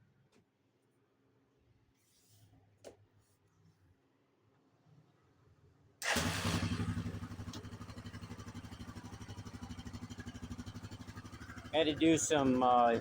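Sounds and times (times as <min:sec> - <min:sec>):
atv engine idling: 0:06.0 - 0:13.0.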